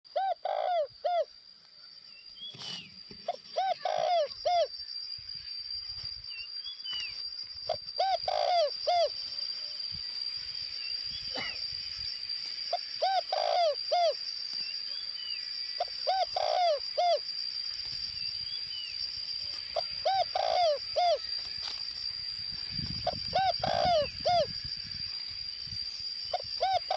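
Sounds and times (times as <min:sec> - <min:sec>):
dove cooing: 0:00.1 - 0:01.3, 0:03.2 - 0:04.7, 0:07.7 - 0:09.2, 0:12.7 - 0:14.2, 0:15.8 - 0:17.2, 0:19.7 - 0:21.3, 0:23.0 - 0:24.6, 0:26.3 - 0:26.9
faint bird chirps: 0:00.1 - 0:26.9
steady high whine: 0:00.1 - 0:26.9.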